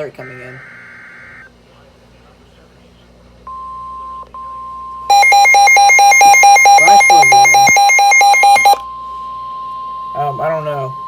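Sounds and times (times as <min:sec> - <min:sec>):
harsh pulsing electronic alarm: 0:00.0 - 0:01.5, 0:05.1 - 0:11.0
high steady warning beep tone: 0:03.5 - 0:11.0.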